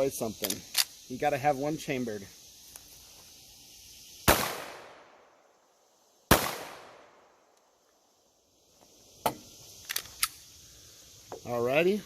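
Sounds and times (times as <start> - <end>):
pistol shots echoing: 4.3 - 5.0, 6.3 - 7.1.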